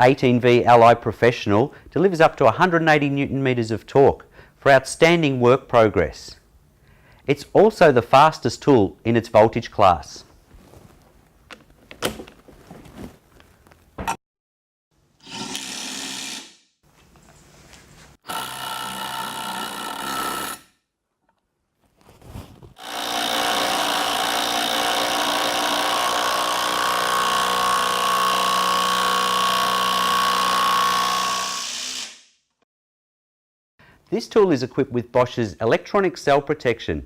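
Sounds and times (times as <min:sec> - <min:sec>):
cordless impact wrench running: 0:15.2 - 0:16.6, 0:18.3 - 0:20.6, 0:22.8 - 0:32.2.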